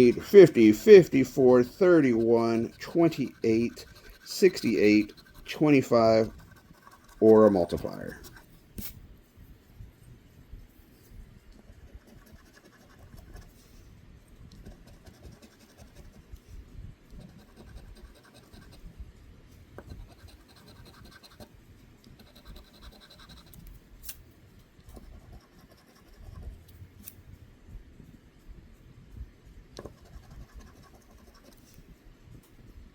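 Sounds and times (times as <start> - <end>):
scratching lottery ticket coating: 0.0 - 8.5, 17.2 - 18.8, 19.9 - 21.4, 22.2 - 23.6, 25.0 - 26.6.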